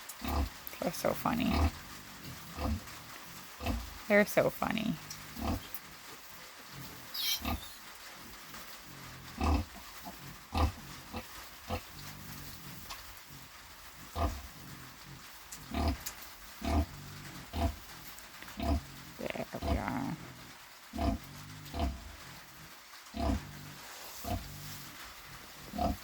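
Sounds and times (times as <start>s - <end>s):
sow grunting: 0.2s - 4.0s, 4.7s - 5.8s, 6.9s - 7.8s, 14.1s - 16.0s, 16.6s - 22.2s, 23.2s - 24.8s, 25.6s - 26.0s.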